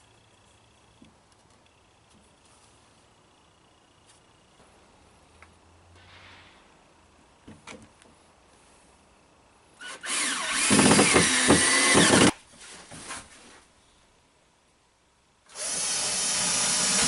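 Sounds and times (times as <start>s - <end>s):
power tool running: 9.8s - 12.4s, 15.5s - 17.0s.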